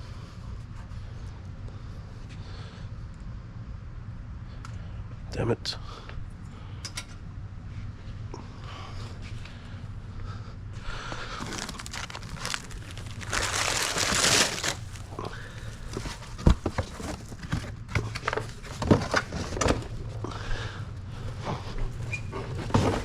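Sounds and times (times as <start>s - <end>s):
steady low hum: 0.0s - 23.0s
crinkling and tearing: 11.3s - 19.4s.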